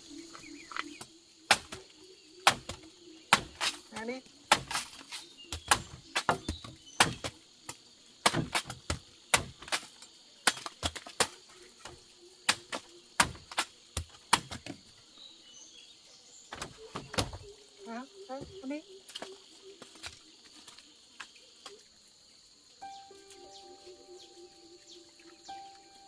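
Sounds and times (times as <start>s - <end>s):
high-pitched hiss: 0.0s - 2.4s, 22.1s - 26.0s.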